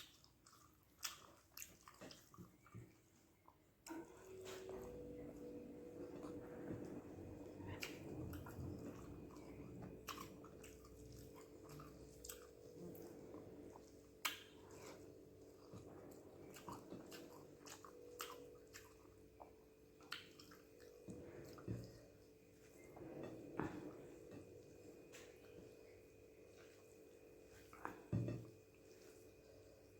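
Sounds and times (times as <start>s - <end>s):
person chewing: 0.0s - 3.6s, 4.6s - 26.0s
wet mouth clicks and smacks: 14.2s - 14.6s.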